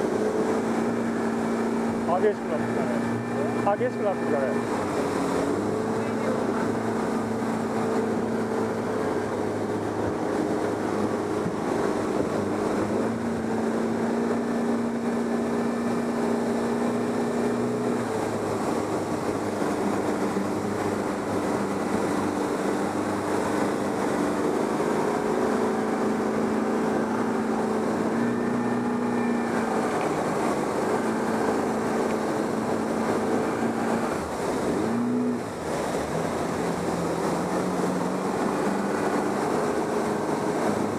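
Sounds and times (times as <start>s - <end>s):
motorboat engine running: 0.0s - 40.9s
water rushing: 0.0s - 40.9s.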